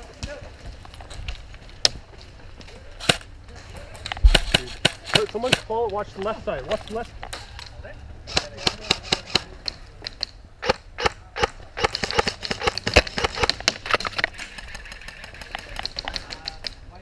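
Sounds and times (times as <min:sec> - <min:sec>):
airsoft guns firing: 0:04.2 - 0:05.8, 0:08.3 - 0:09.5, 0:10.6 - 0:16.0.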